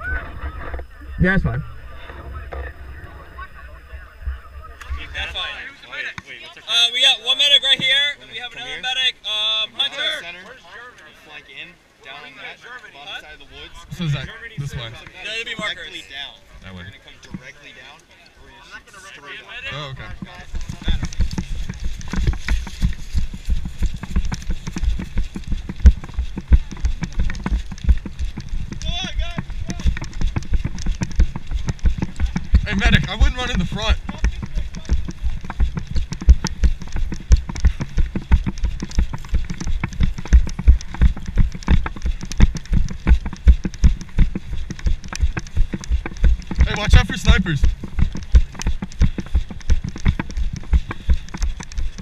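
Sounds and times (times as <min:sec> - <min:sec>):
hurried footsteps: 0:19.7 - 0:52.0
gear rattling: 0:19.9 - 0:52.0.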